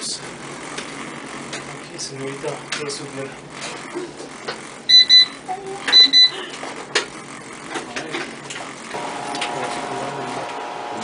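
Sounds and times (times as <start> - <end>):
electronic timer beeps: 4.9 - 6.4
small electric motor humming: 8.8 - 11.0.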